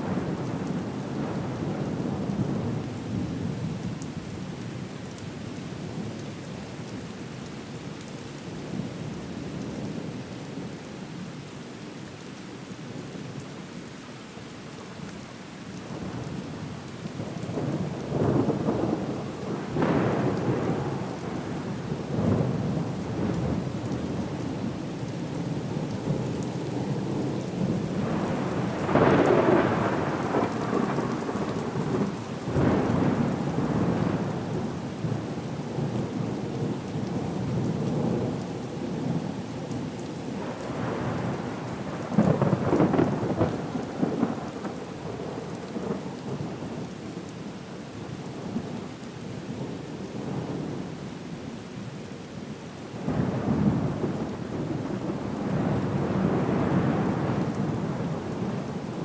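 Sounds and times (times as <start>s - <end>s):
steady rain: 0.0s - 59.0s
rumbling thunder: 27.6s - 35.2s, 40.4s - 46.0s, 53.0s - 58.7s.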